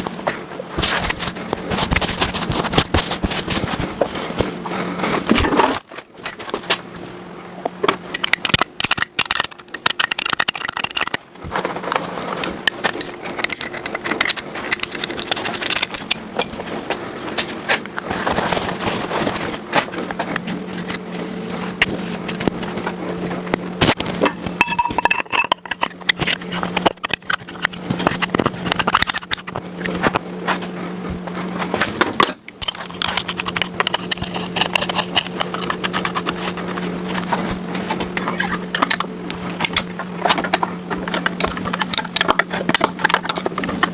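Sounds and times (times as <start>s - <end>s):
steady low hum: 0.0s - 43.9s
metallic clicks and scrapes of tools: 11.9s - 16.8s, 18.1s - 30.2s, 31.6s - 43.9s.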